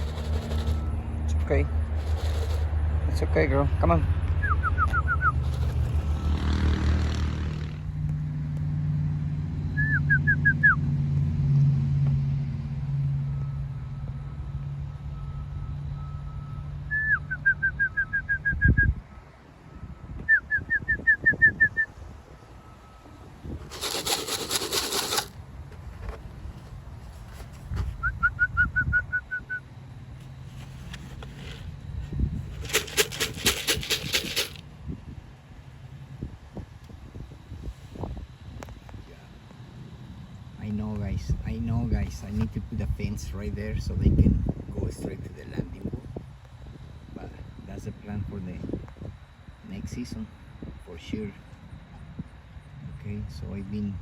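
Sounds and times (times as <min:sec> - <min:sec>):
pigeon wings flapping: 0:00.0 - 0:00.8, 0:02.0 - 0:02.7, 0:05.4 - 0:06.5, 0:23.7 - 0:25.4, 0:32.6 - 0:34.6
low engine drone: 0:00.0 - 0:20.2.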